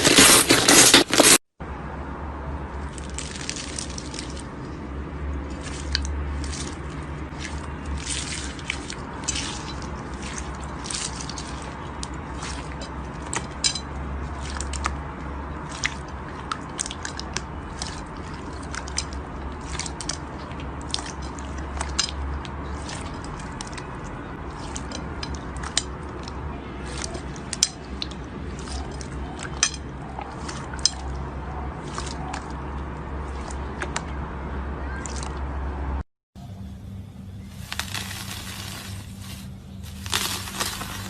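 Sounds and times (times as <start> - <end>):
crunchy slime crackling: 0.0 - 1.4, 2.7 - 31.0, 37.4 - 41.0
steady low hum: 36.4 - 41.0.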